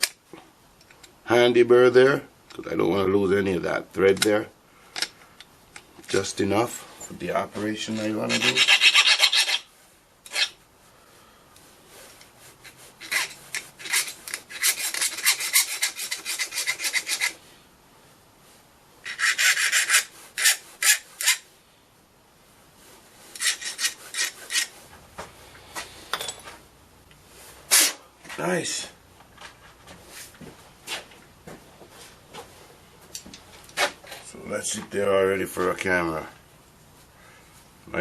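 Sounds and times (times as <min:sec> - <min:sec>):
metal file rasping on brass: 0:07.9 - 0:09.7, 0:12.6 - 0:17.4, 0:19.1 - 0:21.4, 0:23.3 - 0:24.7.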